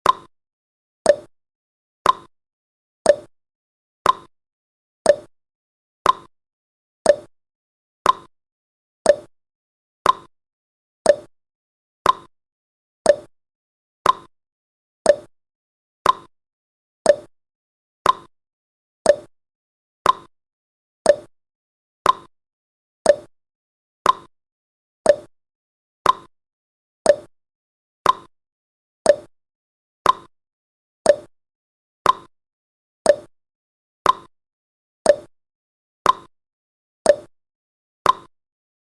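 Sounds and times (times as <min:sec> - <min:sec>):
timer ticking: 0:00.0 - 0:00.3, 0:01.1 - 0:01.3, 0:02.0 - 0:02.3, 0:03.1 - 0:03.3, 0:04.0 - 0:04.3, 0:05.1 - 0:05.3, 0:06.0 - 0:06.3, 0:07.0 - 0:07.3, 0:08.0 - 0:08.3, 0:09.0 - 0:09.3, 0:10.0 - 0:10.3, 0:11.0 - 0:11.3, 0:12.0 - 0:12.3, 0:13.0 - 0:13.3, 0:14.0 - 0:14.3, 0:15.1 - 0:15.3, 0:16.0 - 0:16.3, 0:17.0 - 0:17.3, 0:18.0 - 0:18.3, 0:19.1 - 0:19.3, 0:20.0 - 0:20.3, 0:21.0 - 0:21.3, 0:22.0 - 0:22.3, 0:23.0 - 0:23.3, 0:24.0 - 0:24.3, 0:25.0 - 0:25.3, 0:26.0 - 0:26.3, 0:27.1 - 0:27.3, 0:28.0 - 0:28.3, 0:29.1 - 0:29.3, 0:30.0 - 0:30.3, 0:31.1 - 0:31.3, 0:32.1 - 0:32.3, 0:33.1 - 0:33.3, 0:34.1 - 0:34.3, 0:35.1 - 0:35.3, 0:36.1 - 0:36.3, 0:37.1 - 0:37.3, 0:38.1 - 0:38.3.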